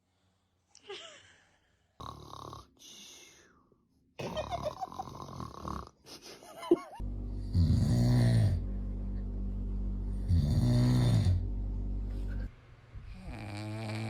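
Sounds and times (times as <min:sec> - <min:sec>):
man snoring: 0:02.0 - 0:02.8, 0:04.3 - 0:05.9, 0:07.4 - 0:08.6, 0:10.2 - 0:11.5, 0:13.1 - 0:14.0
music with low drone: 0:07.0 - 0:13.1.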